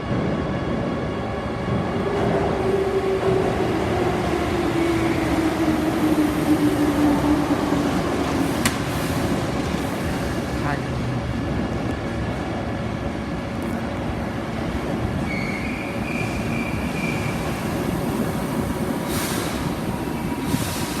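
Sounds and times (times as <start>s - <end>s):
train wheels rumbling: 0.0s - 21.0s
high wheel squeal: 15.2s - 17.4s.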